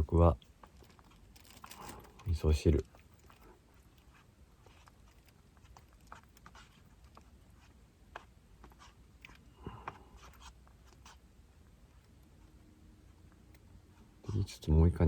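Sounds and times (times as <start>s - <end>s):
small items clicking and knocking: 0.6s - 3.5s.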